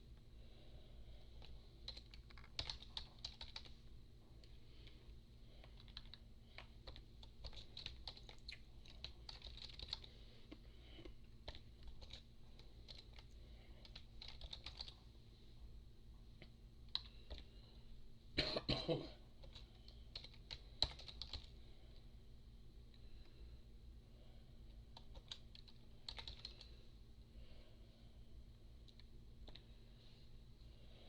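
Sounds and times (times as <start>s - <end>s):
faint keyboard typing: 1.2s - 15.1s, 16.4s - 17.8s, 19.4s - 22.1s, 24.8s - 26.8s, 28.8s - 29.8s.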